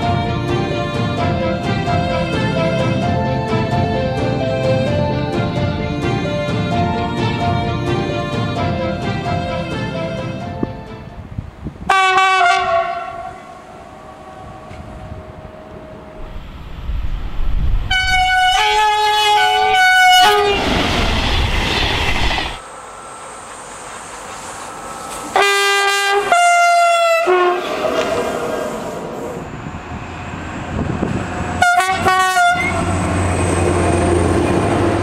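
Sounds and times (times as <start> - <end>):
passing train rumble: 0.0 - 35.0
two-tone train horn: 6.6 - 11.0, 11.9 - 16.3, 17.9 - 20.7, 25.3 - 27.9, 31.6 - 33.1.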